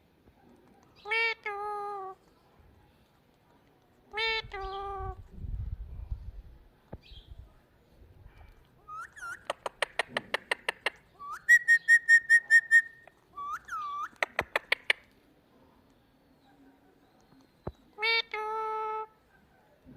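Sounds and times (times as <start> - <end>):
parrot whistling: 8.8 - 9.6, 11.2 - 14.9
parrot sharp clicks: 9.2 - 11.1, 14.0 - 15.1.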